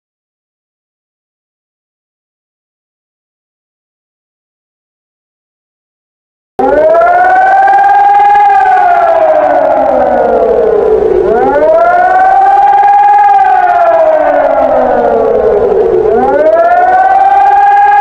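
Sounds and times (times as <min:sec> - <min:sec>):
emergency siren wailing: 0:06.6 - 0:18.0.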